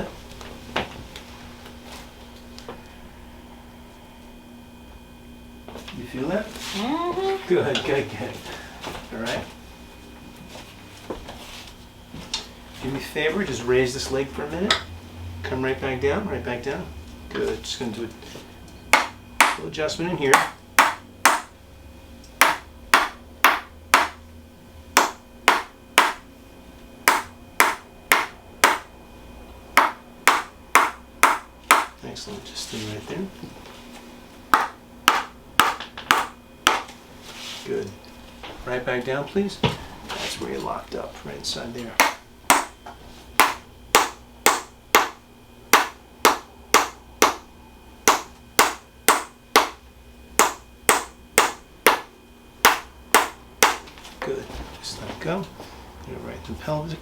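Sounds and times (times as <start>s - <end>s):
sharp chiropractic adjustment strikes: 18.9s - 19.7s, 20.4s - 21.5s, 22.4s - 24.2s, 25.0s - 26.2s, 27.1s - 28.9s, 29.8s - 32.0s, 34.5s - 36.9s, 42.0s - 42.8s, 43.4s - 47.4s, 48.0s - 49.8s, 50.4s - 53.9s.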